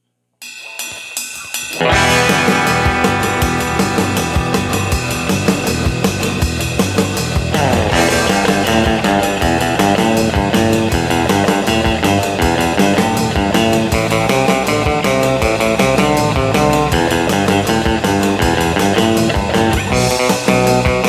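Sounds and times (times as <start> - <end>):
backing track with drums: 0.4 - 21.0
electric guitar surf-rock melody: 0.6 - 21.0.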